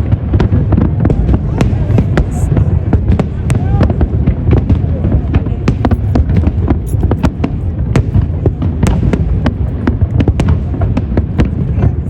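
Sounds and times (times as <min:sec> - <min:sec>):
fireworks cracking: 0:00.0 - 0:12.0
low rumble of fireworks: 0:00.0 - 0:12.0.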